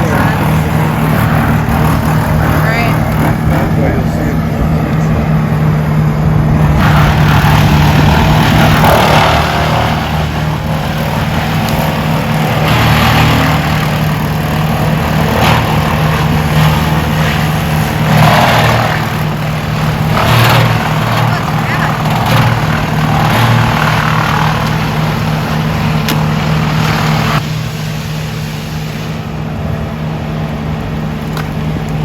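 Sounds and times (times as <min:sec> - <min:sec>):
wood chipper grinding branches: 0:00.0 - 0:32.0.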